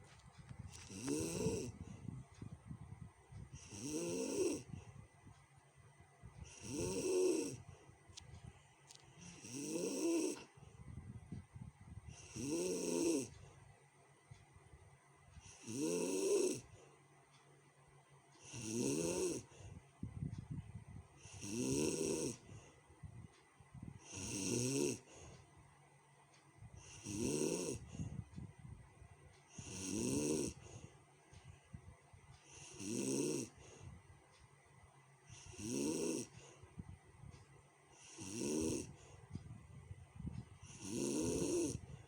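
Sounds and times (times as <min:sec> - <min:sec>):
rattling breaths: 0:00.0 - 0:14.6, 0:18.3 - 0:42.0
person snoring harshly: 0:00.8 - 0:01.8, 0:03.6 - 0:04.7, 0:06.5 - 0:07.6, 0:09.2 - 0:10.4, 0:12.2 - 0:13.3, 0:15.6 - 0:16.6, 0:18.5 - 0:19.5, 0:21.2 - 0:22.4, 0:24.0 - 0:25.0, 0:26.8 - 0:27.9, 0:29.6 - 0:30.6, 0:32.6 - 0:33.6, 0:35.4 - 0:36.3, 0:38.0 - 0:38.9, 0:40.7 - 0:41.8.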